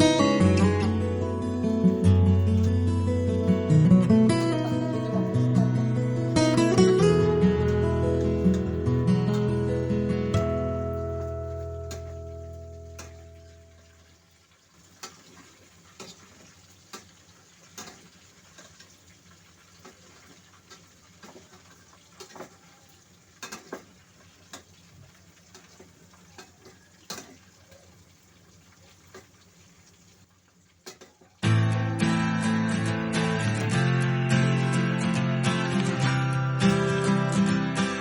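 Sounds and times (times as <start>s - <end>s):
guitar music: 0.0s - 14.0s, 31.4s - 38.0s
faint frying hiss: 0.0s - 38.0s.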